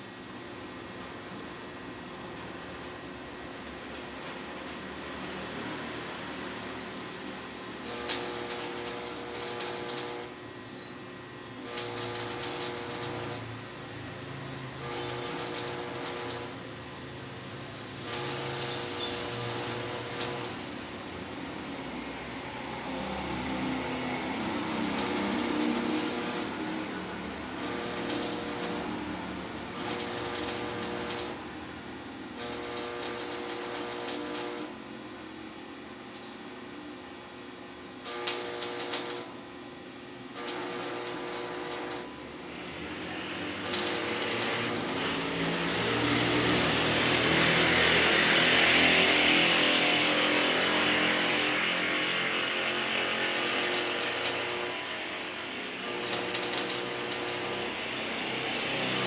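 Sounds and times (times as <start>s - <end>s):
welder hum: 7.7s - 10.5s, 11.6s - 35.0s, 38.0s - 39.6s, 40.3s - 59.0s
welding arc crackling: 7.8s - 10.4s, 11.6s - 22.0s, 22.6s - 34.8s, 38.0s - 39.4s, 40.3s - 59.0s.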